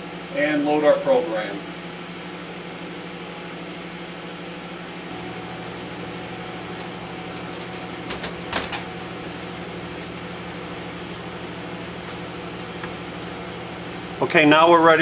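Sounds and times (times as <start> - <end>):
dust collector humming: 0.0 - 15.0.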